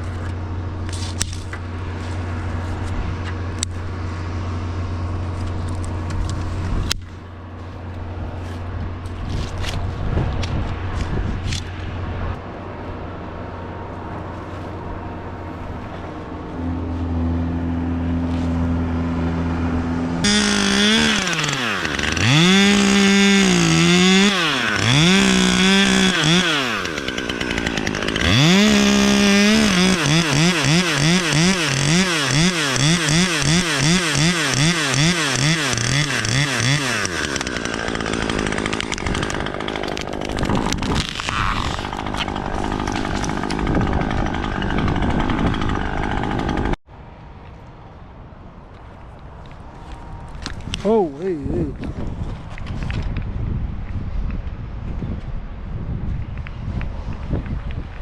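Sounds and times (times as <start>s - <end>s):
low engine hum: 0.0s - 32.4s
chainsaw revving and cutting: 17.9s - 46.8s.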